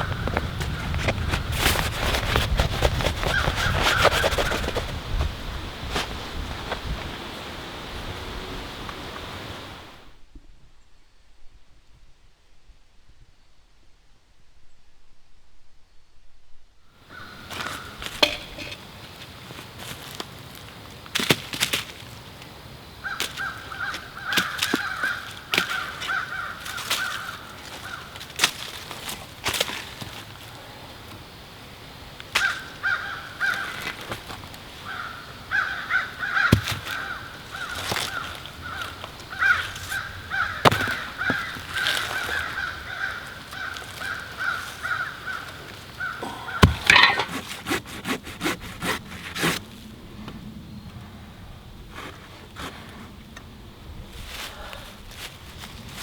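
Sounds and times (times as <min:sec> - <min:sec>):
dry wood snapping: 0:00.0 - 0:04.9, 0:23.1 - 0:30.2, 0:32.2 - 0:32.7, 0:36.2 - 0:45.7, 0:46.5 - 0:49.6
wood cracking: 0:00.0 - 0:05.0, 0:36.2 - 0:45.7, 0:46.5 - 0:49.6
hand saw rasping: 0:46.6 - 0:49.6.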